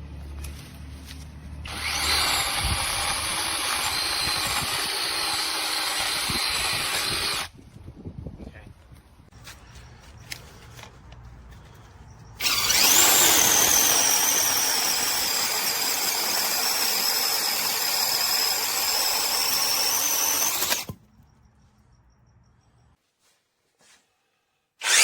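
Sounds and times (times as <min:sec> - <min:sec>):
mini chainsaw whining: 0:01.6 - 0:07.5, 0:12.4 - 0:21.0, 0:24.8 - 0:25.0.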